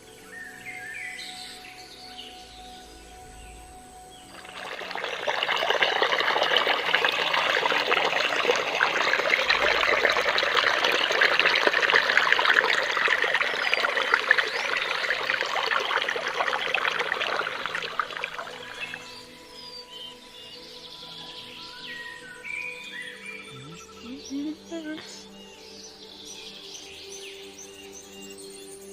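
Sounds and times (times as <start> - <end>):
water flowing and splashing: 4.2 - 19.4.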